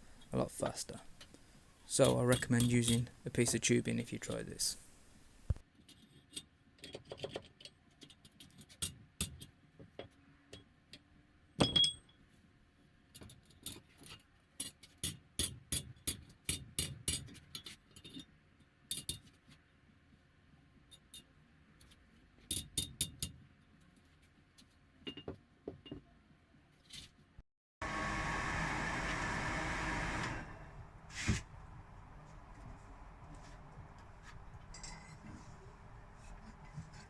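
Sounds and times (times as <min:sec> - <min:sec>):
steel tools clinking: 0:34.7 - 0:35.3.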